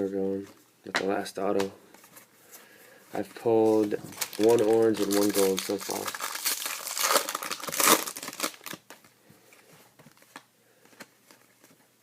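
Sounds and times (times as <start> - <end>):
wrapper crinkling and tearing: 3.6 - 9.0.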